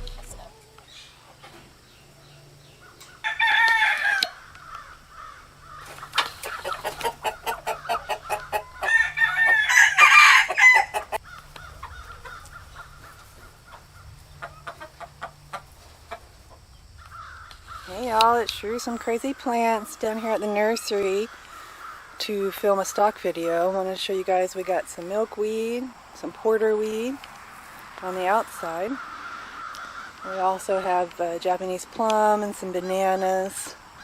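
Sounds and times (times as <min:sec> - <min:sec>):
rooster crowing: 0:03.1 - 0:05.8, 0:07.2 - 0:11.2.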